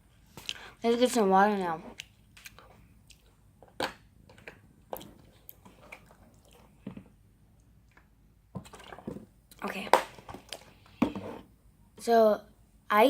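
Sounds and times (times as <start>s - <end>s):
person chewing food: 1.9s - 3.4s, 4.3s - 7.1s.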